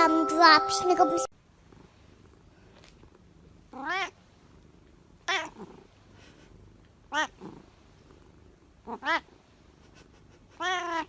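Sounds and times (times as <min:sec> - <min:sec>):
cat meowing: 0:03.8 - 0:04.1, 0:10.6 - 0:11.0.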